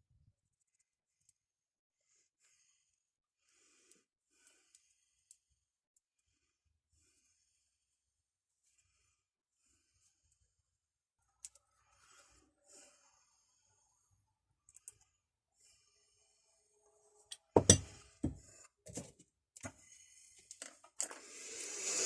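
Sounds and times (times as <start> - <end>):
sharp knocks on workbench: 17.6 - 18.4.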